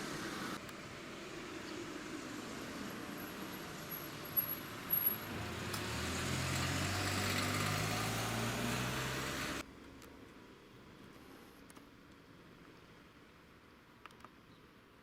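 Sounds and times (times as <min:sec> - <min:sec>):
vehicle engine hum: 0:00.0 - 0:10.0
road noise: 0:00.0 - 0:14.1.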